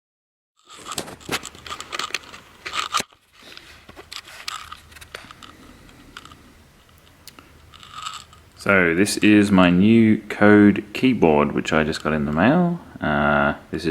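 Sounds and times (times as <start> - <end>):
crinkling handling clicks: 0.6 - 9.3
rustling: 0.6 - 10.1.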